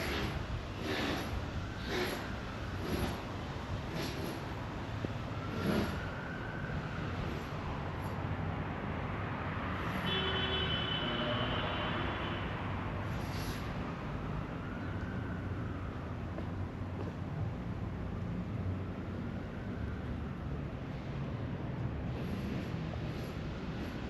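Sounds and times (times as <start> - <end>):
road traffic passing: 0.0 - 24.0.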